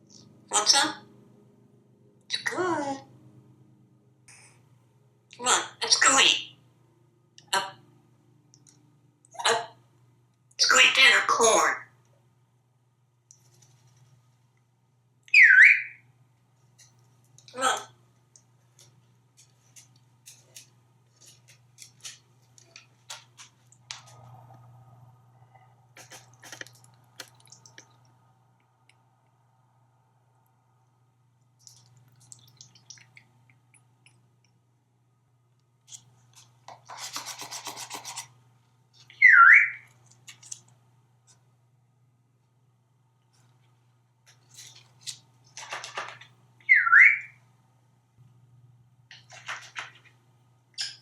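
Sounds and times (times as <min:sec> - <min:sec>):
parrot whistle: 0:15.3 - 0:16.0, 0:39.1 - 0:39.9, 0:46.6 - 0:47.4.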